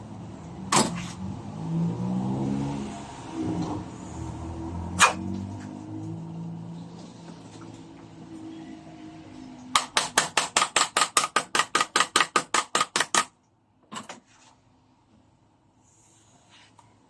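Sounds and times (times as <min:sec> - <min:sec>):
hammer tapping: 0:09.8 - 0:13.3.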